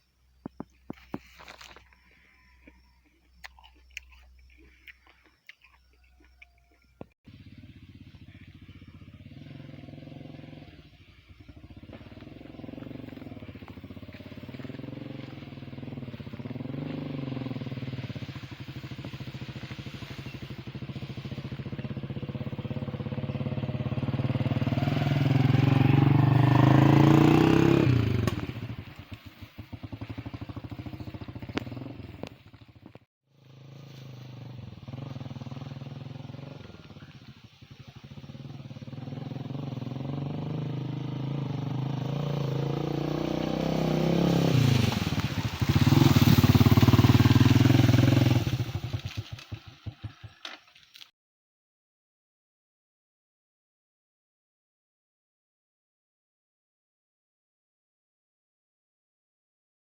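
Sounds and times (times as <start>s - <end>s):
motorcycle engine running: 7.0s - 51.0s.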